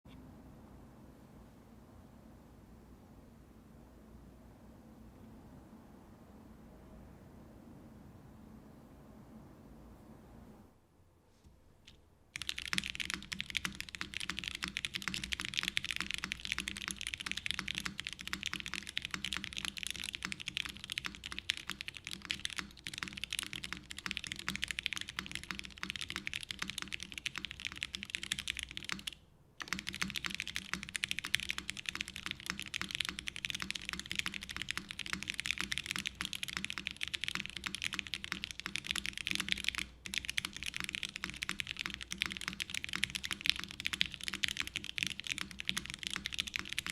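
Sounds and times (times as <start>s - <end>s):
mechanical keyboard typing: 12.4s - 46.9s.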